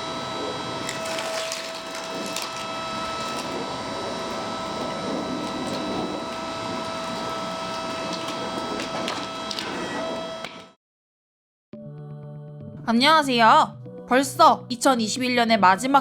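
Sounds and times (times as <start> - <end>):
hydraulic pump motor whine: 0.0 - 10.8
wood cracking: 0.8 - 3.6, 5.4 - 9.8.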